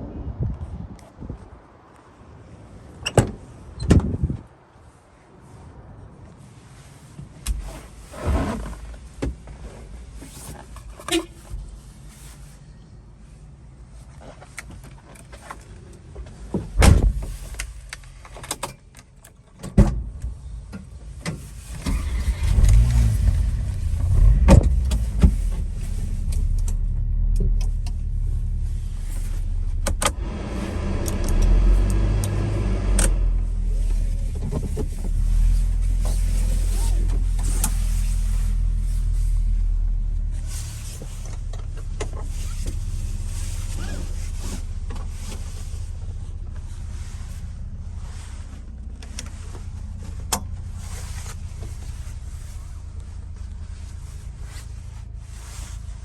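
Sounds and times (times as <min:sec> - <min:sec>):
car engine droning and revving: 0:20.4 - 0:55.8.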